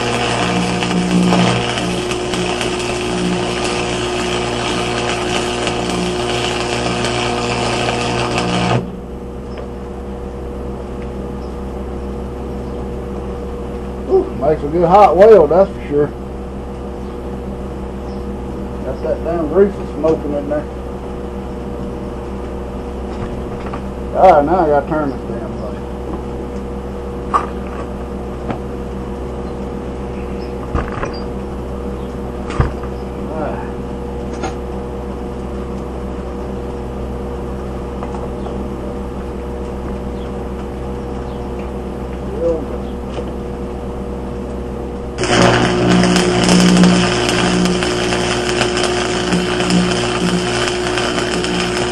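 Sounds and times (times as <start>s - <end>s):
welding arc crackling: 0.0s - 9.0s, 45.0s - 51.9s
low mains hum: 0.0s - 51.9s.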